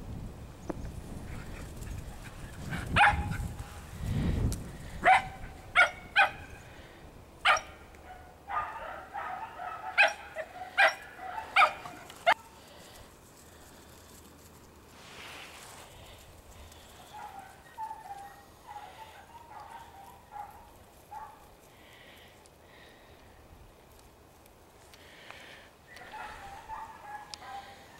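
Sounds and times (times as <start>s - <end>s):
dog barking: 2.7s - 3.4s, 5.0s - 6.5s, 7.4s - 12.5s, 17.1s - 21.4s, 26.0s - 27.9s.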